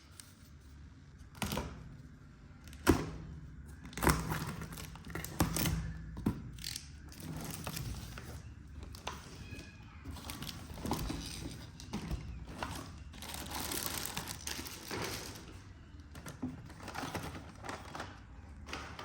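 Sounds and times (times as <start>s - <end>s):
packaging being handled: 6.5s - 19.0s.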